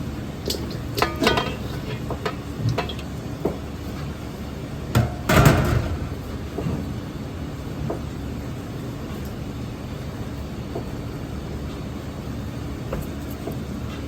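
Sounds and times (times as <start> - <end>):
steady background hum: 0.0 - 14.0
metal utensils and pans clattering: 0.5 - 3.1, 5.0 - 6.2.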